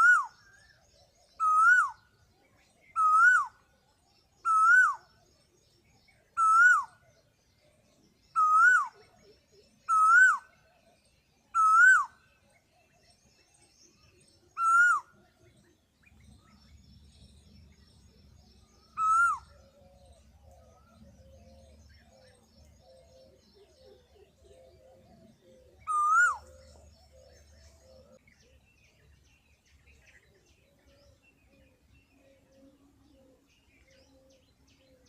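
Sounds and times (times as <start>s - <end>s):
peacock calling: 0.0s - 0.4s, 6.4s - 7.0s, 8.4s - 9.0s, 11.6s - 12.2s, 14.6s - 15.2s, 18.8s - 20.0s, 25.6s - 28.2s.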